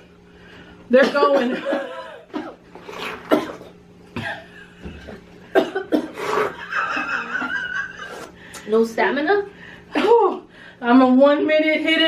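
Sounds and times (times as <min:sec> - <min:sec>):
person coughing: 0:01.0 - 0:04.5, 0:05.5 - 0:06.6.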